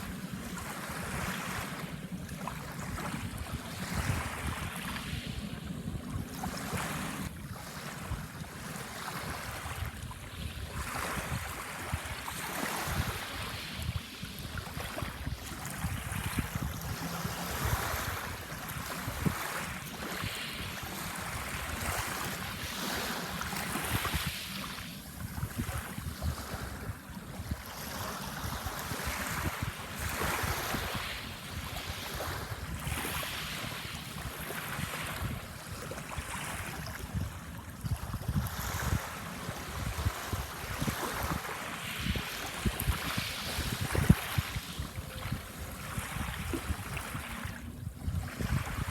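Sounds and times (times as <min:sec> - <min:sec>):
waves washing onto shore: 0:00.0 - 0:48.9
wind rumbling on microphone: 0:00.0 - 0:48.9.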